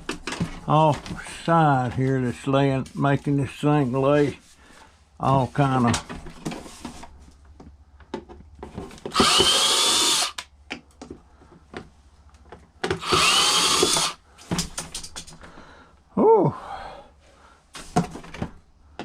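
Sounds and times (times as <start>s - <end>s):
screw gun motor whine: 9.1s - 10.4s, 13.0s - 14.2s
handling clicks and knocks: 14.4s - 15.5s.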